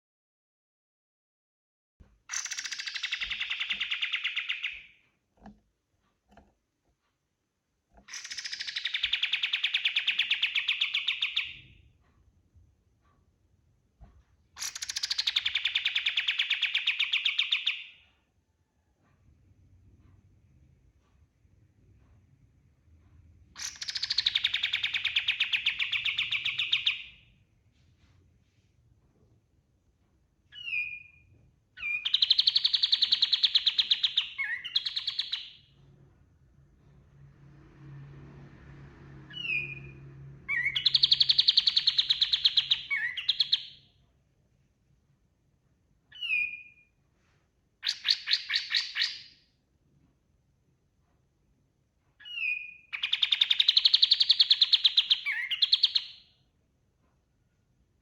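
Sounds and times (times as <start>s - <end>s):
bulbul singing: 2.3s - 5.0s, 8.1s - 11.7s, 31.8s - 35.7s, 40.5s - 43.8s.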